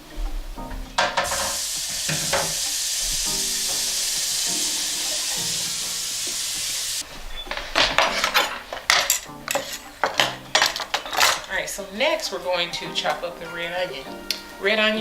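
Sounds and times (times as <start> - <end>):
board and dishes clattering: 0.0 - 3.8, 7.0 - 11.8
tap water spraying on board: 0.6 - 7.0.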